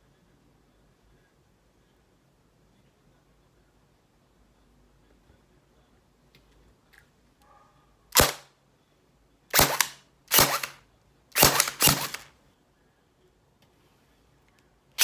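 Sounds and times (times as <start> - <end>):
airsoft rifle shots: 8.2 - 8.4, 9.5 - 10.8, 11.4 - 12.3.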